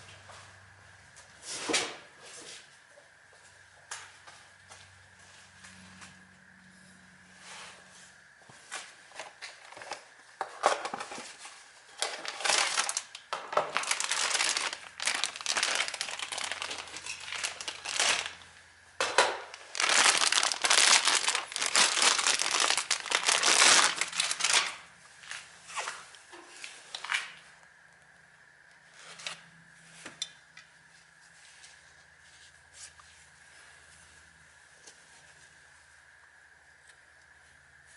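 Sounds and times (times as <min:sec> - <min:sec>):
crinkling and rustling handling noise: 0:07.5 - 0:27.5.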